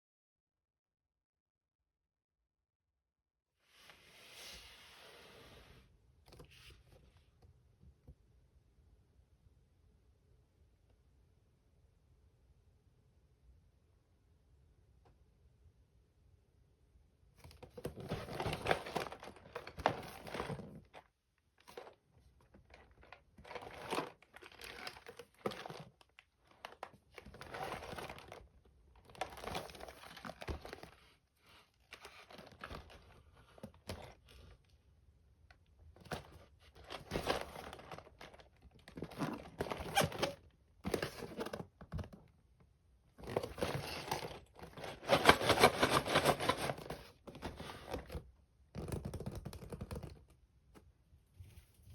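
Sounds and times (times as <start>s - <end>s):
plastic and cardboard crinkling: 17.4s - 34.7s, 35.8s - 42.3s, 43.1s - 50.3s.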